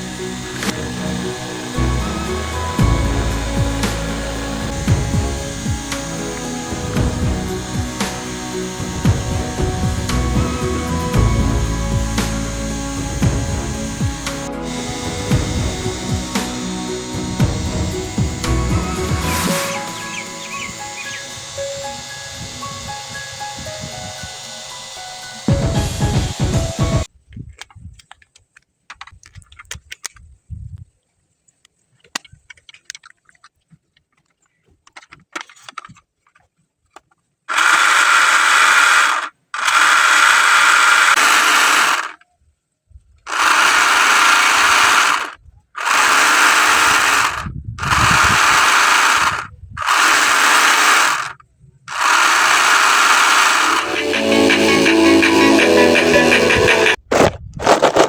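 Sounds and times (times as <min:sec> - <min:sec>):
small electric motor whirring: 0:00.0 - 0:27.1, 0:37.5 - 0:42.2, 0:43.3 - 0:57.0.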